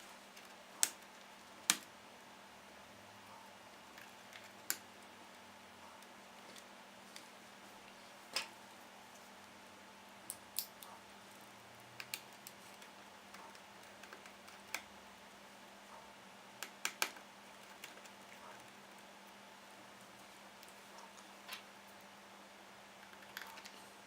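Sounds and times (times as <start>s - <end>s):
faint steady hum: 0.0s - 24.0s
clicks and taps of small parts: 12.0s - 14.9s, 16.6s - 18.7s.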